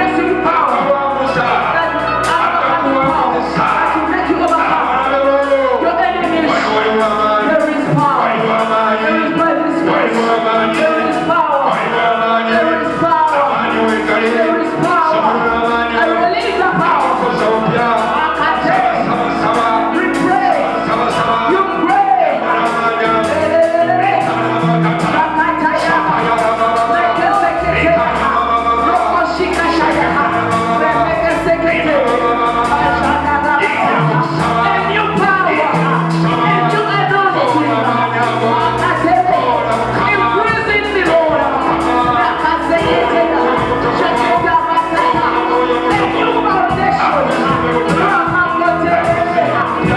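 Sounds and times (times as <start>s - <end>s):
steady drumbeat: 0.0s - 49.9s
worship singing over a band: 0.0s - 49.9s.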